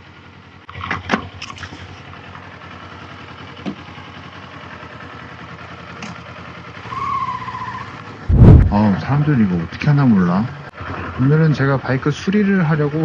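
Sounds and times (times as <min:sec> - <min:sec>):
motorcycle engine idling: 0:00.0 - 0:08.2.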